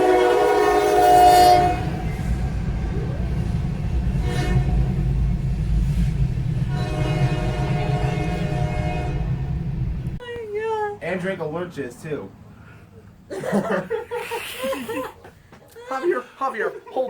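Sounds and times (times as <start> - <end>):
train air horn chord: 0.0 - 9.8
steady low rumble: 1.4 - 10.3.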